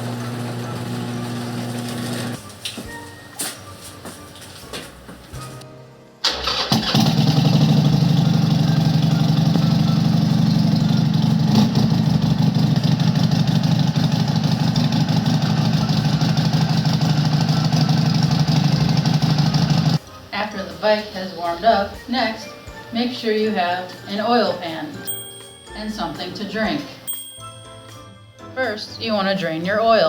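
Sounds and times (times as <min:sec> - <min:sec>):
motorcycle engine starting and idling: 0:06.2 - 0:20.0.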